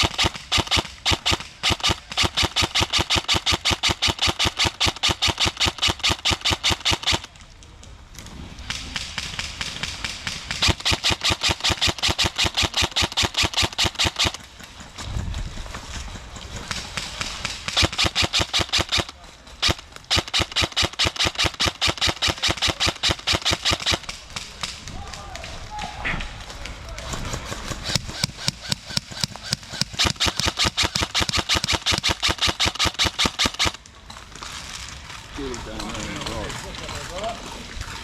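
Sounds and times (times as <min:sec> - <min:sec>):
airsoft gun rapid firing: 0:00.0 - 0:07.3, 0:08.7 - 0:14.9, 0:16.3 - 0:24.9, 0:26.9 - 0:33.8.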